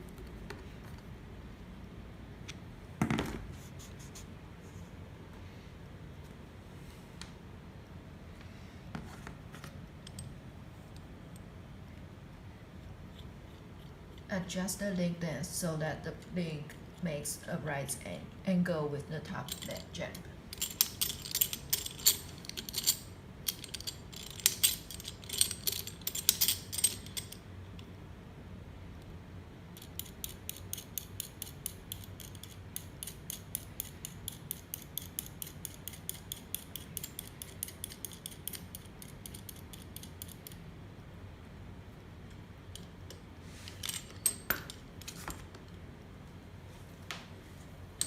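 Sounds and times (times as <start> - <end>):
metal hardware clinking: 19.4 - 27.4, 42.7 - 45.4
rapid ratcheting clicks: 29.8 - 40.6.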